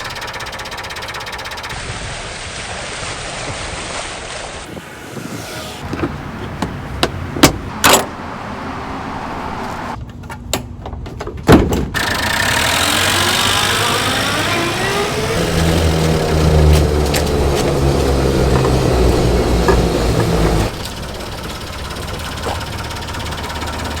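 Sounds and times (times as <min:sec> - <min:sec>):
van engine revving: 0:12.0 - 0:24.0
sharp clicks and knocks: 0:15.6 - 0:24.0.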